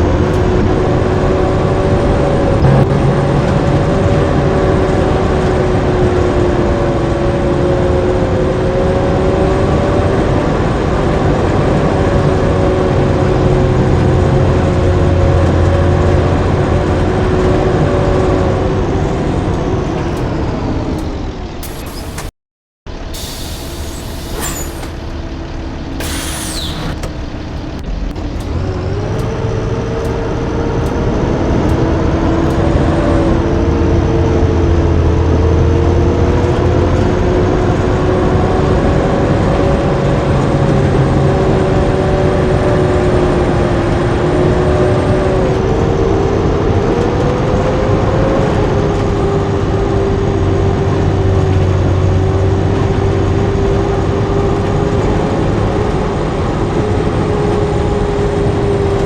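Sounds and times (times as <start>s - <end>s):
bus diesel engine: 0.0s - 22.3s, 22.9s - 59.0s
air brake hiss: 21.6s - 22.3s, 23.1s - 25.1s, 26.0s - 27.0s.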